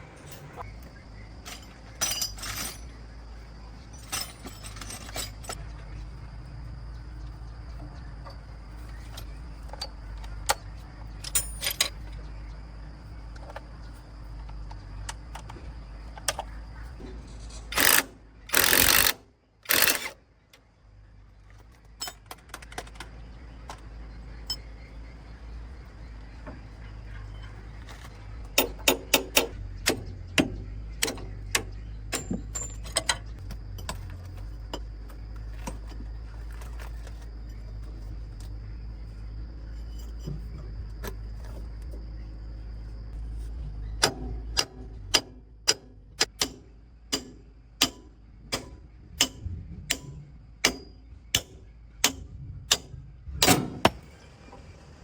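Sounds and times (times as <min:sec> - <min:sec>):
metal tools clinking: 0:00.0 - 0:00.8, 0:01.4 - 0:03.0, 0:03.8 - 0:05.6, 0:10.5 - 0:12.2, 0:17.0 - 0:19.1, 0:19.7 - 0:20.2, 0:21.9 - 0:23.1, 0:31.0 - 0:38.1
quick run of clicks: 0:17.7 - 0:20.2
steady low hum: 0:22.9 - 0:55.0.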